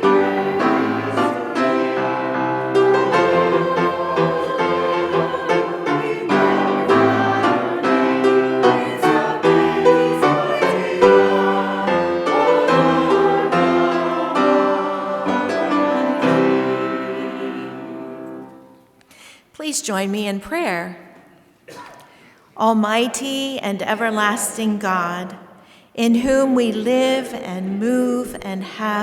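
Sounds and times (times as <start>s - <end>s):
piano slow sustained chords: 0.0s - 18.8s.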